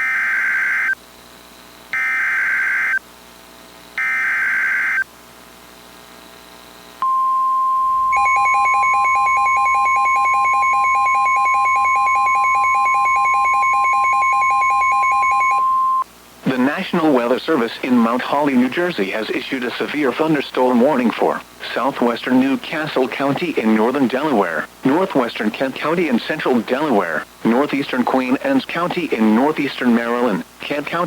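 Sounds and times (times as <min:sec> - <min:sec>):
steady warning alarm tone: 0:02.0 - 0:03.0, 0:04.0 - 0:05.0, 0:07.0 - 0:16.0
screechy data bursts: 0:04.0 - 0:05.0
rapid beeping: 0:07.0 - 0:16.7.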